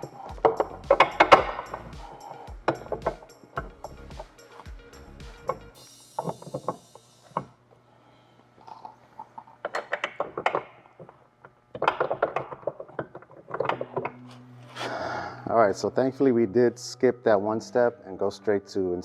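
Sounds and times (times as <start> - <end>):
hand tools clicking on metal: 0.0 - 4.7.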